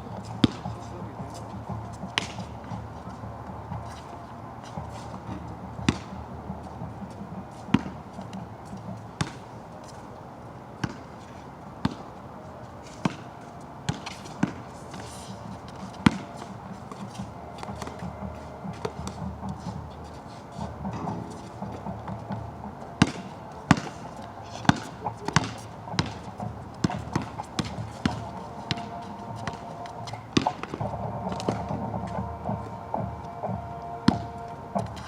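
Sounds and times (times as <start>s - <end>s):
basketball bouncing on wet court: 0.4s - 0.6s, 5.8s - 6.1s, 13.9s - 14.6s, 23.0s - 23.9s, 24.7s - 26.2s, 26.8s - 29.6s.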